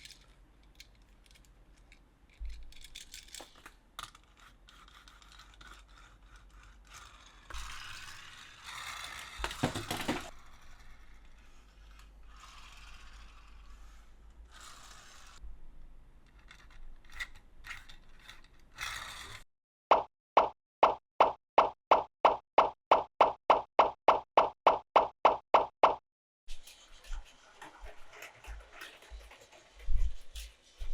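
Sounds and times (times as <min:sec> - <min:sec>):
plastic toy parts clicking and rattling: 0:00.0 - 0:15.4, 0:16.2 - 0:19.4.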